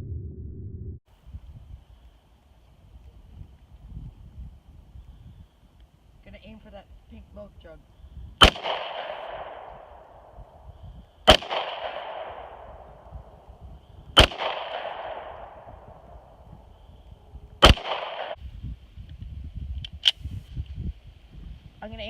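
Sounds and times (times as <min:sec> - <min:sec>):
pistol shots with echo: 0:08.4 - 0:10.4, 0:11.2 - 0:13.1, 0:14.2 - 0:15.9, 0:17.6 - 0:18.4.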